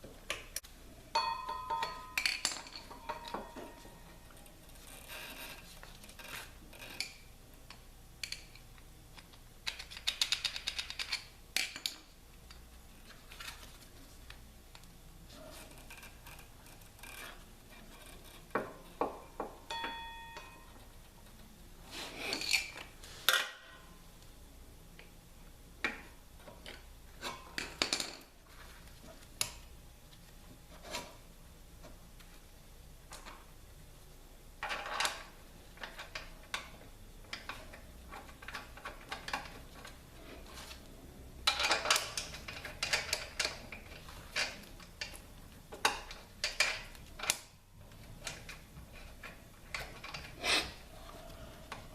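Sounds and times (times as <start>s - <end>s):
metal tools clicking and knocking: 1.2s - 3.8s, 41.4s - 47.4s.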